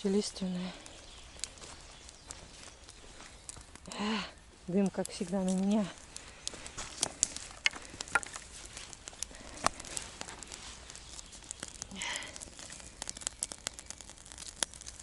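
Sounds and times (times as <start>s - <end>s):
campfire crackling: 0.0s - 15.0s
rustle: 0.0s - 15.0s
sharp fire pops: 5.0s - 15.0s.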